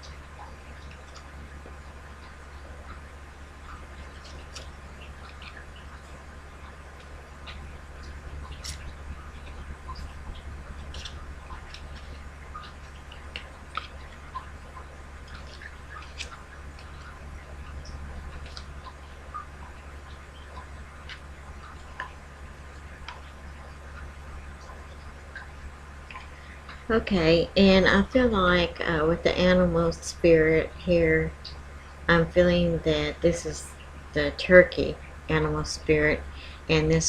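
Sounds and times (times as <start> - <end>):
faint clicks and taps: 0.0 - 27.4
low electrical hum: 0.0 - 37.0.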